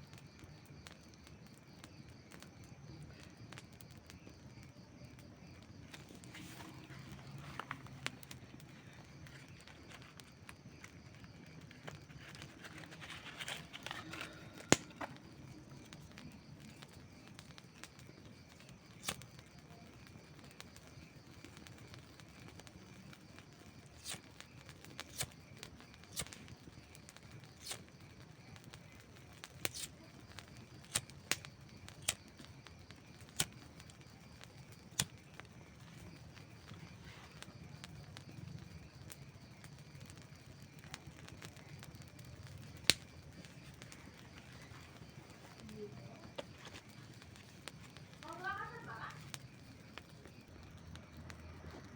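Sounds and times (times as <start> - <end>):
campfire crackling and popping: 0.0 - 51.9
hiss of burning: 0.1 - 51.9.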